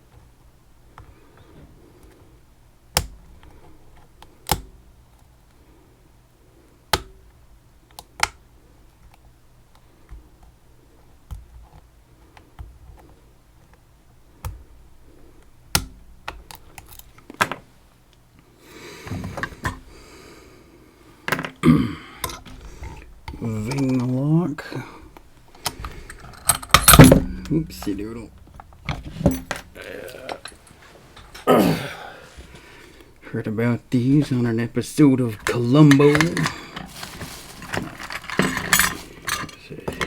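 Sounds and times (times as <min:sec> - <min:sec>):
scraping and rattling metal: 0:25.6 - 0:31.5, 0:35.5 - 0:39.9.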